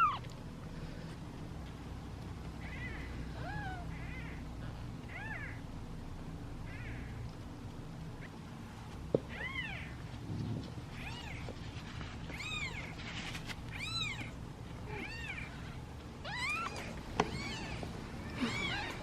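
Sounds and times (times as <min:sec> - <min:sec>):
kittens meowing: 0:00.0 - 0:00.3, 0:02.6 - 0:05.6, 0:09.3 - 0:10.0, 0:10.9 - 0:11.6, 0:12.2 - 0:19.0.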